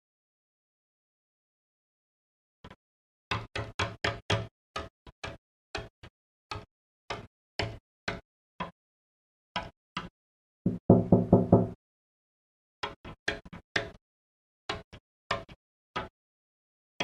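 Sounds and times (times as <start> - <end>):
knocking on window pane: 10.7 - 11.8.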